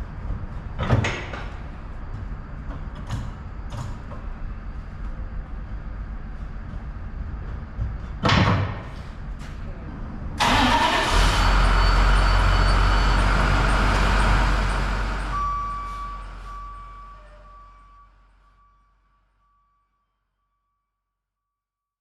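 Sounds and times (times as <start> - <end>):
heavy diesel equipment running: 10.3 - 17.9.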